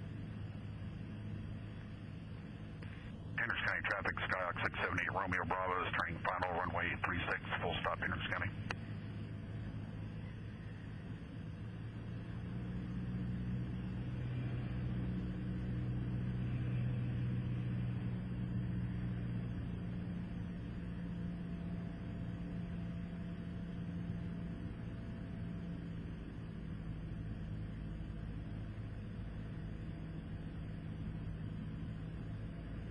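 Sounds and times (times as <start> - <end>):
plane engine and propeller droning: 0.0 - 32.9.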